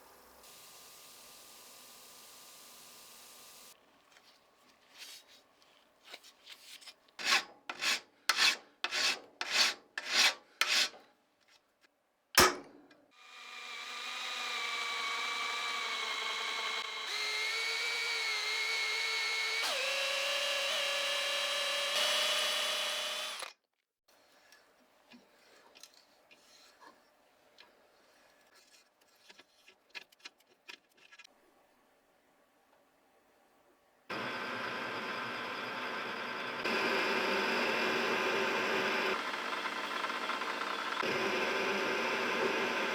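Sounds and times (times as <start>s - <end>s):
hand filing strokes: 7.2s - 11.0s
small power tool running: 13.2s - 23.5s, 34.1s - 42.9s.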